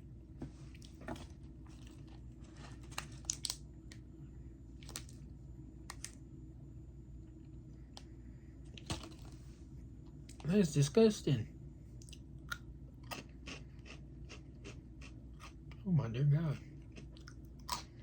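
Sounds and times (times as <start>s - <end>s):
snack packaging crinkling: 1.7s - 4.0s, 4.8s - 5.2s.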